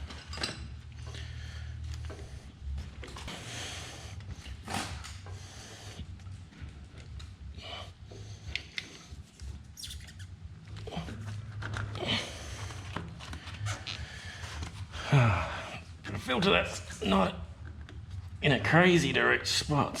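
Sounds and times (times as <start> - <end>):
short high squeaks: 9.8 - 10.4.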